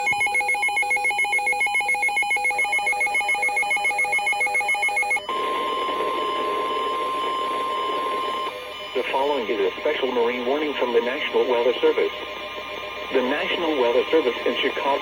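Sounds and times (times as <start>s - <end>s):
radio static: 5.4s - 15.0s.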